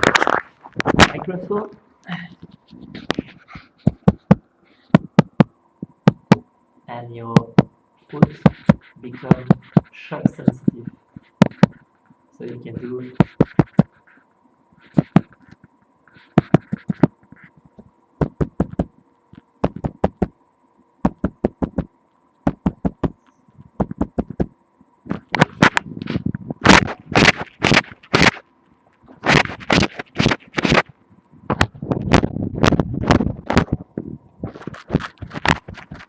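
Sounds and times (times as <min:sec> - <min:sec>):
foot tapping hard surface: 0:03.0 - 0:06.4, 0:10.5 - 0:11.8, 0:13.2 - 0:13.9, 0:16.3 - 0:17.4, 0:18.2 - 0:20.4, 0:21.0 - 0:23.2, 0:23.8 - 0:25.8.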